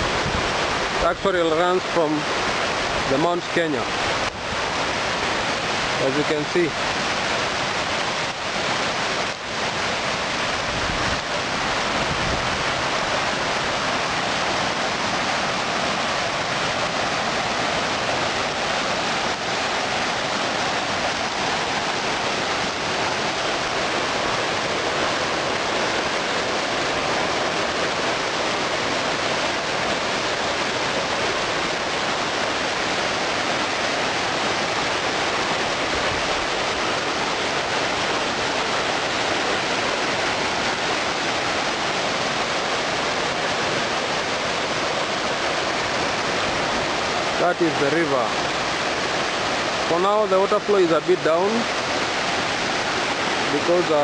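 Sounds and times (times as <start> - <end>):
river water rushing over rocks: 0.0 - 54.0.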